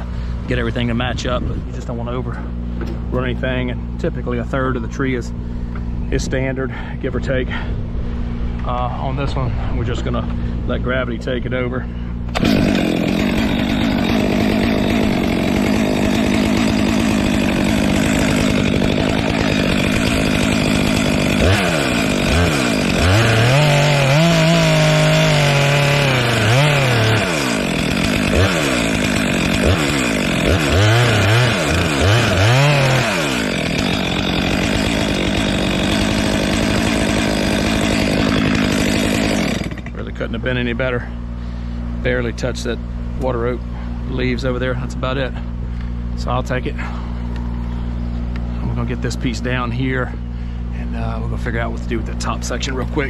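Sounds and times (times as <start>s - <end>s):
chainsaw cutting wood: 12.3s - 40.2s.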